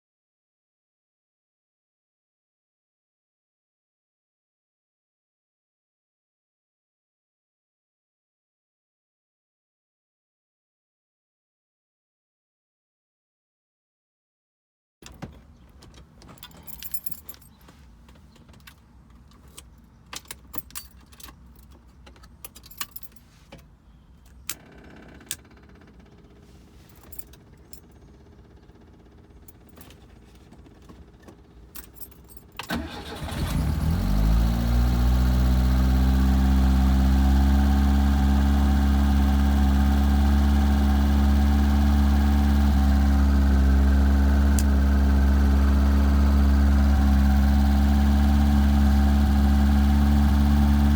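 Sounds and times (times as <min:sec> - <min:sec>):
keys jangling: 0:15.0 - 0:23.3, 0:26.8 - 0:27.9, 0:31.7 - 0:32.7
car engine starting and idling: 0:15.0 - 0:50.9.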